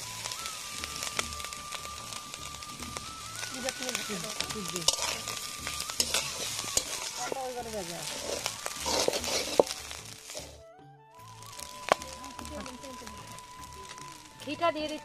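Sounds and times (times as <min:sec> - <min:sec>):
food sizzling in oil: 0:00.0 - 0:10.6, 0:11.2 - 0:15.0
spatula scraping a pan: 0:03.9 - 0:10.6.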